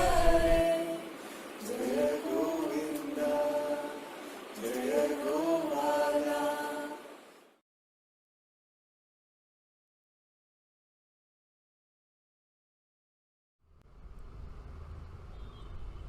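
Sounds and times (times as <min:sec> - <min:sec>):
slow sung chant: 0:00.0 - 0:07.6.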